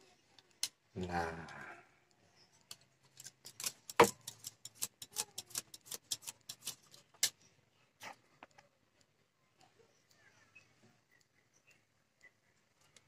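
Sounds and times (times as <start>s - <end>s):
sharp clicks and taps: 2.6s - 7.5s.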